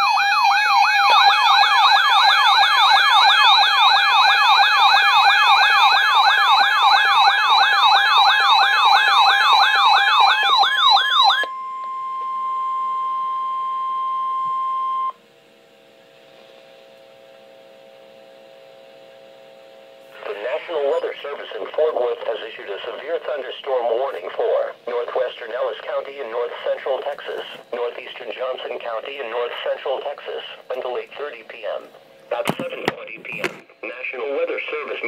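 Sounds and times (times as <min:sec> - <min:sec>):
emergency siren warbling: 0:00.0 - 0:15.2
faint hum: 0:09.4 - 0:35.0.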